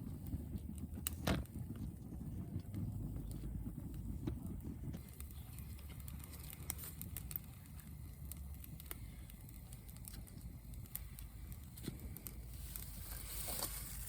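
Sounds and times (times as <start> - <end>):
low rumble: 0.0 - 7.2
sharp clicks and crackles: 0.0 - 14.0.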